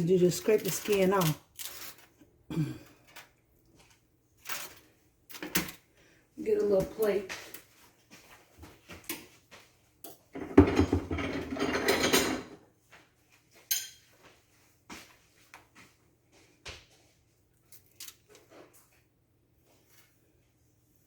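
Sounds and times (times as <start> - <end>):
plates clattering: 10.4 - 12.6.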